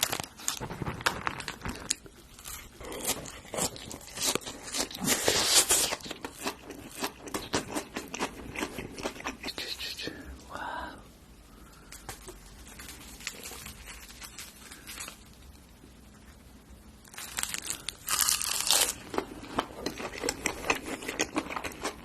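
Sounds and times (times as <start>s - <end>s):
crunchy food being chewed: 0.0s - 9.6s, 17.0s - 22.0s.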